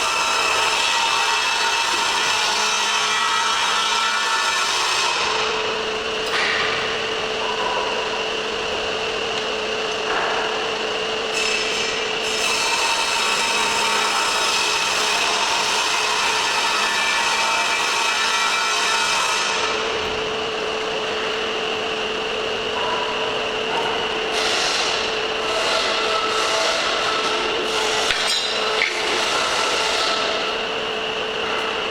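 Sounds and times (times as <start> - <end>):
wood rasping against sander: 24.3 - 30.5.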